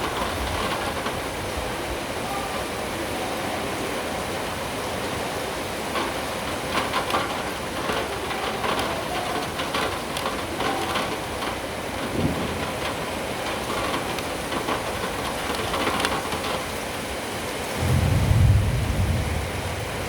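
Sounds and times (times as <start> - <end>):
rain hiss: 0.0 - 20.0
low city hum: 4.8 - 20.0.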